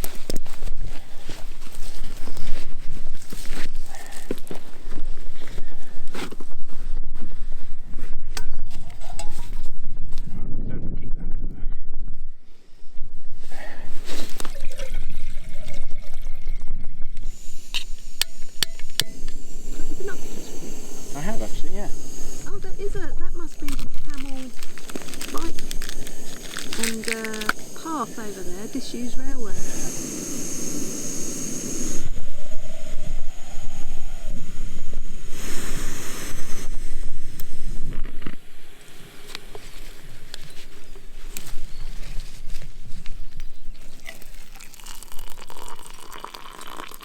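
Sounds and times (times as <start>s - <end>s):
wind buffeting microphone: 9.5s - 12.3s
liquid pouring: 14.4s - 22.5s, 44.0s - 47.0s
wind hissing: 16.8s - 47.0s.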